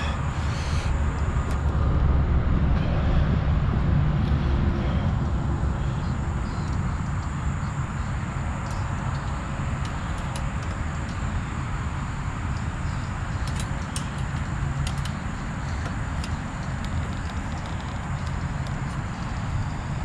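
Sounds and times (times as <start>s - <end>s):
low rumble: 0.0s - 10.1s
light clicks: 12.5s - 19.5s.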